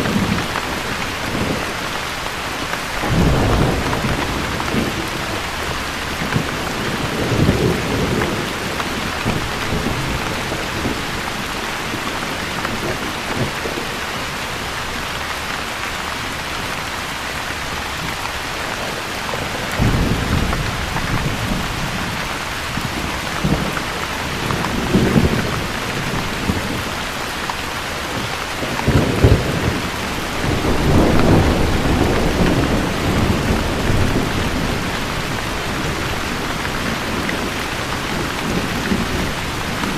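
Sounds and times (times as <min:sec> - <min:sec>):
steady rain falling: 0:00.0 - 0:39.9
thunder rumbling: 0:00.0 - 0:39.9.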